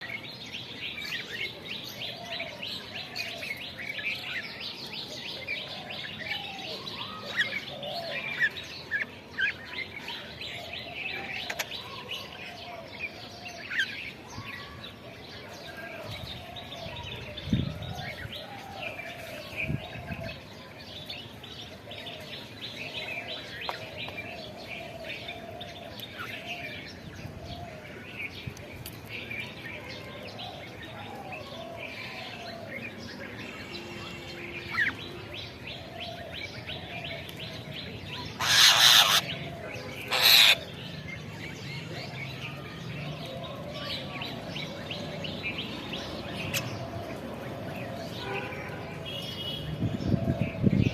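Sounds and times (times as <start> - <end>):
birds chirping: 0.0 - 50.9
lower warbling bird call: 38.4 - 39.4.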